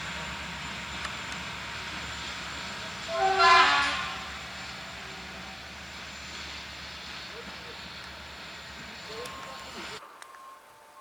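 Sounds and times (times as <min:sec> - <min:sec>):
low rumble of railway noise: 0:00.0 - 0:11.0
locomotive horn blast: 0:03.0 - 0:05.6.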